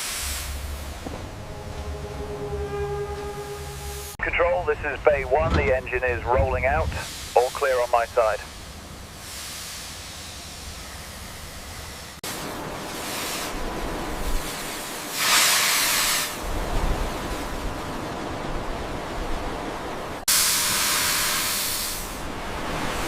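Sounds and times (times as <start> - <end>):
locomotive hissing steam: 0.0 - 0.8, 6.8 - 12.2, 13.0 - 13.6, 14.3 - 16.4, 20.3 - 22.2
blasts of escaping steam: 9.2 - 10.9, 15.1 - 16.4, 20.3 - 22.2.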